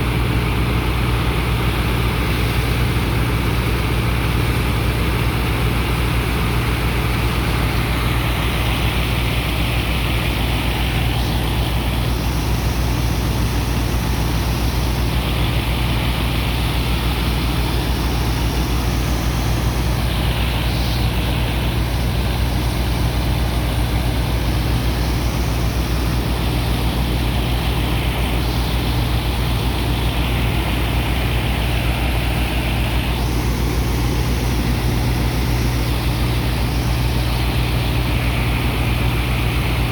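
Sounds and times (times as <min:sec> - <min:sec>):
diesel engine humming: 0:00.0 - 0:39.9.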